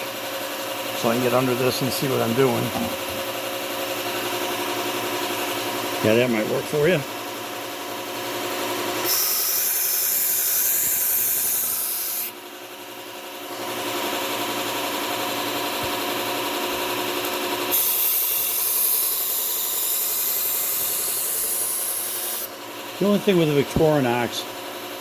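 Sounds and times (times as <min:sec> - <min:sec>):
belt sander motor hum: 0:08.3 - 0:12.4
knife blade grinding hiss: 0:09.0 - 0:12.3, 0:17.7 - 0:22.5.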